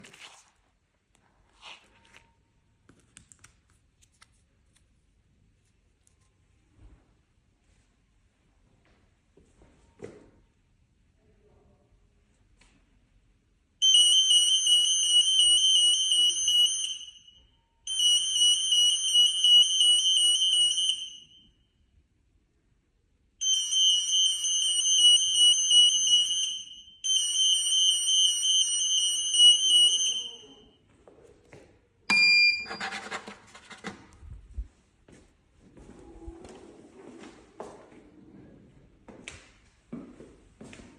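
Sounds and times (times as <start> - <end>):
security gate alarm beeping: 13.8 - 21.7, 23.4 - 30.9, 32.1 - 33.0.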